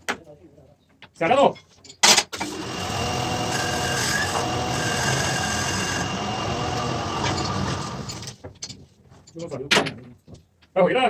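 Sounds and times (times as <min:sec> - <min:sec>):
high squealing of tool on metal: 0:02.4 - 0:08.4
lathe cutting metal: 0:02.4 - 0:08.4.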